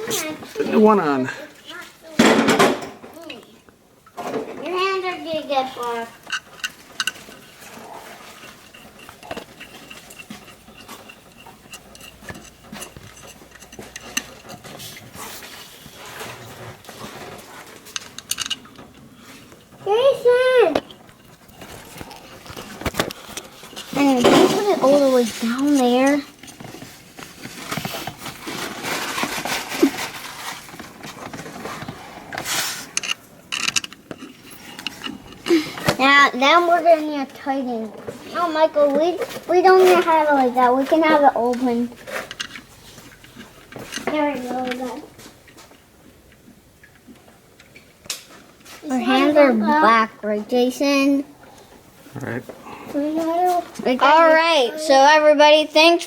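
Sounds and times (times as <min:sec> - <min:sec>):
tools and metal parts rattling: 0:05.9 - 0:19.8, 0:20.8 - 0:36.2, 0:39.2 - 0:44.9
metallic clinks and taps: 0:08.3 - 0:14.8, 0:17.9 - 0:19.0.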